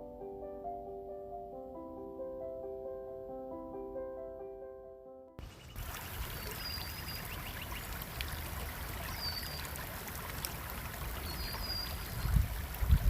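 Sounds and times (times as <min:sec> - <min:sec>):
high bird chirps: 0:05.4 - 0:07.9, 0:09.1 - 0:09.7, 0:11.2 - 0:12.4
stream water flowing: 0:05.4 - 0:13.0.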